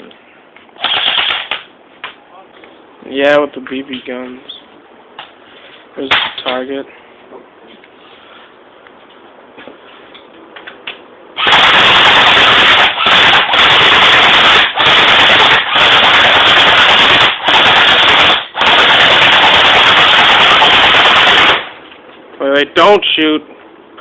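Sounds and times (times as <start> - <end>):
airsoft gun firing bursts: 0.8 - 1.6, 11.4 - 21.8.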